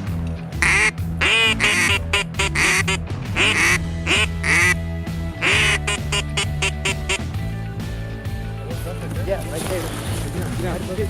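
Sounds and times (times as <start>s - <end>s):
background music with low notes: 0.0s - 11.0s
duck call quacks: 0.6s - 4.8s, 5.4s - 7.3s.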